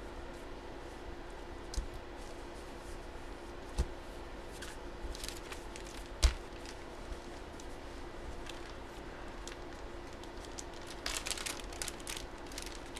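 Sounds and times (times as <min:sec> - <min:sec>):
steady low hum: 0:00.0 - 0:12.9
light rustling and handling: 0:04.5 - 0:12.9.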